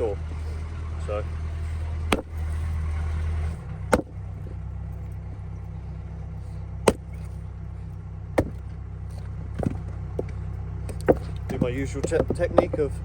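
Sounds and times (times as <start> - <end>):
engine running at low speed: 0.0 - 13.0
wood splitting cracks: 2.1 - 2.8, 3.9 - 4.5, 6.8 - 7.4, 8.4 - 12.8.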